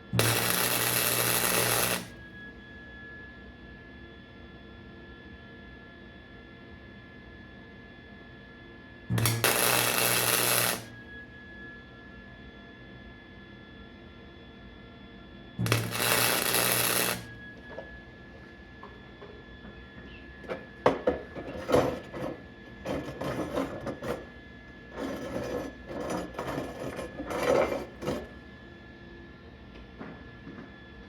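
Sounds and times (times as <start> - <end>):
arc welding hiss: 0.0 - 2.2, 9.1 - 10.9, 15.6 - 17.3
crackling welds: 0.0 - 2.2, 9.1 - 11.0, 15.6 - 17.4.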